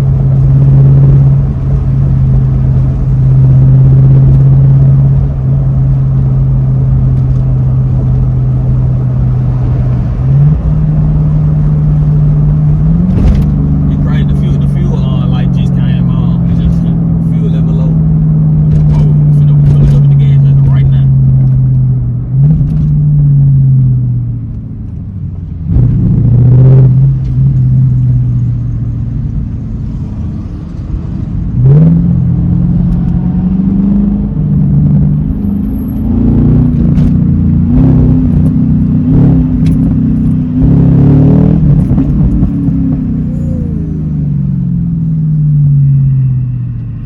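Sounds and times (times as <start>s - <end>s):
car engine accelerating hard: 0.0s - 47.0s
exhaust pops: 12.6s - 17.9s, 18.5s - 23.0s, 36.6s - 40.8s.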